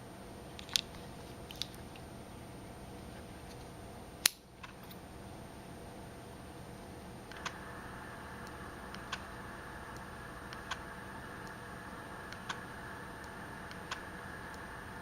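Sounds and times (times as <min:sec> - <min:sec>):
faint steady hiss: 0:00.0 - 0:15.0.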